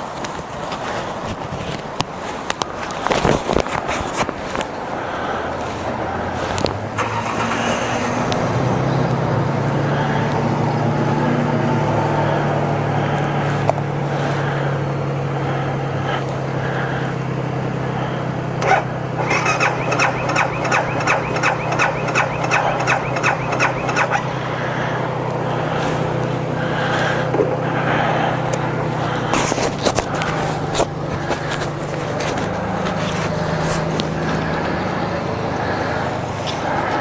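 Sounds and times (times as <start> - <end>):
motorcycle engine droning: 4.1 - 37.0
rapid ticking: 18.6 - 24.2.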